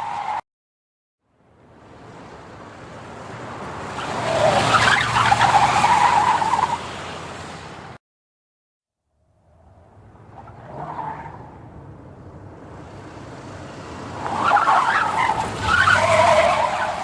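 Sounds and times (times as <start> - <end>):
car tyres squealing: 0.0 - 0.4, 3.6 - 7.5, 9.6 - 17.0
car noise: 1.4 - 8.0, 9.2 - 17.0.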